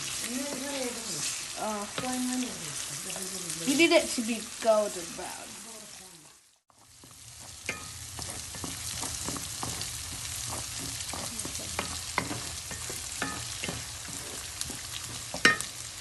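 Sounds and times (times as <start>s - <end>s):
food sizzling in a frying pan: 0.0s - 16.0s
utensil knocking against pan: 7.6s - 14.2s.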